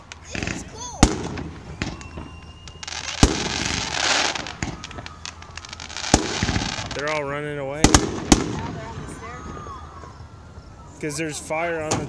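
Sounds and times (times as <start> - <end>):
sharp firework bangs: 0.0 - 9.6
loud hissing crackle: 0.0 - 11.9.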